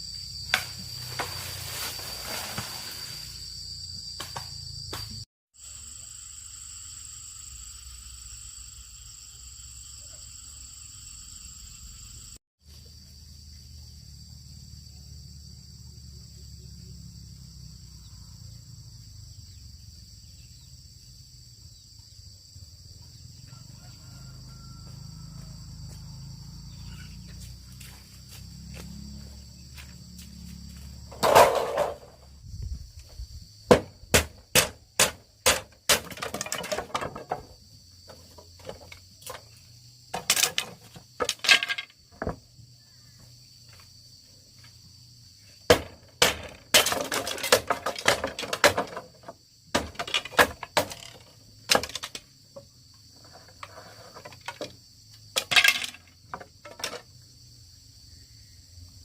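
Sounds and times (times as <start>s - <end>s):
short rustling scrapes: 1.0s - 3.4s, 53.3s - 54.4s
sharp knocks and clatters: 31.1s - 32.2s, 33.7s - 42.4s, 45.7s - 57.1s.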